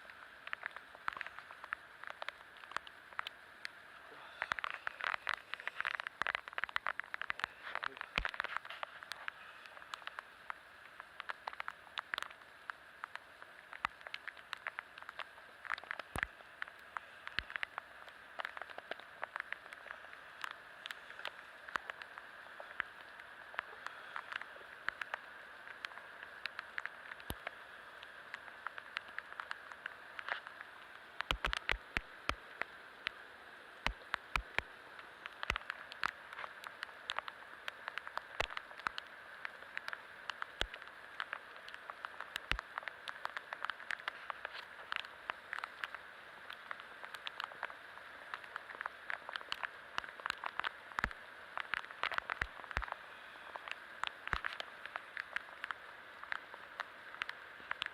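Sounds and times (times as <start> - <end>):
heavy rain falling: 0.0 - 57.9
raindrops ticking close by: 0.0 - 57.9.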